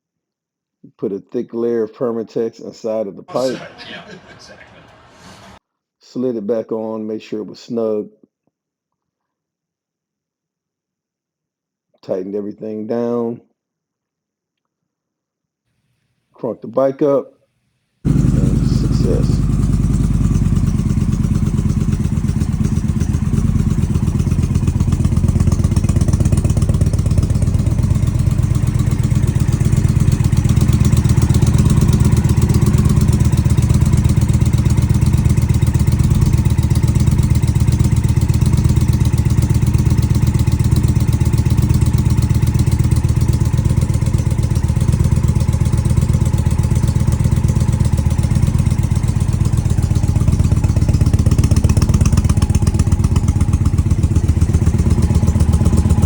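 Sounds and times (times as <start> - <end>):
motorcycle engine idling: 18.1 - 56.0.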